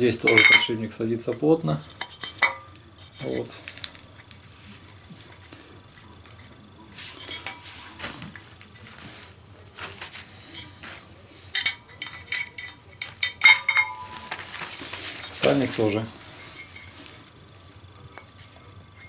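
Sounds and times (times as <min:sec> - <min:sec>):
metal parts clinking and knocking: 0:00.2 - 0:00.8, 0:11.6 - 0:16.0
metallic knocks with rings: 0:13.4 - 0:14.2.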